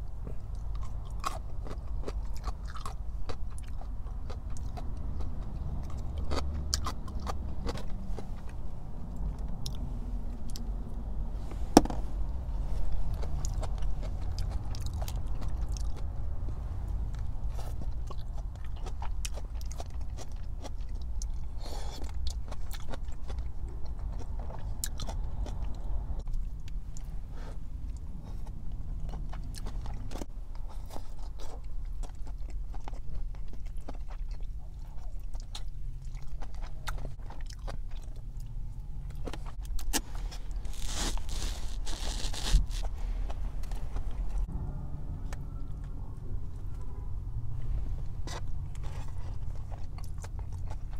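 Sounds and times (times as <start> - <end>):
wet chewing and crunchy bites: 0.0 - 10.7, 11.8 - 44.5, 48.2 - 50.9
low hum: 4.0 - 18.7, 38.4 - 50.9.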